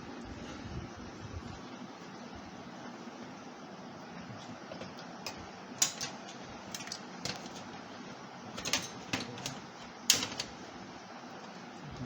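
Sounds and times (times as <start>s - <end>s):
metal parts clicking and knocking: 5.3s - 7.7s, 8.6s - 10.6s.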